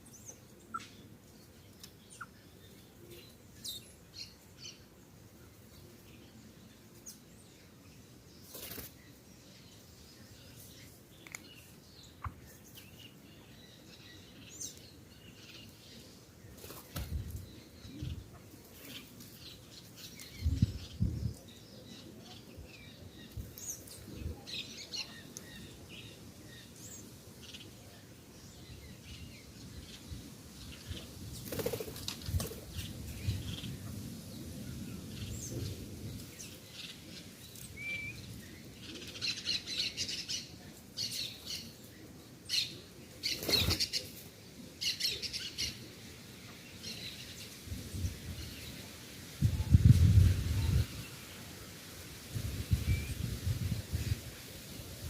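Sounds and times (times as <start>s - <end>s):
bird wings flapping: 8.5s - 9.0s, 16.6s - 17.2s, 31.4s - 32.7s.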